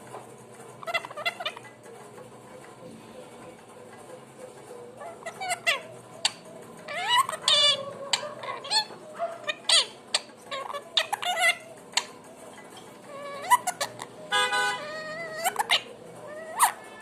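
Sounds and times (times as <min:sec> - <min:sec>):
parrot chirps and squawks: 0:00.7 - 0:01.8, 0:04.9 - 0:17.0.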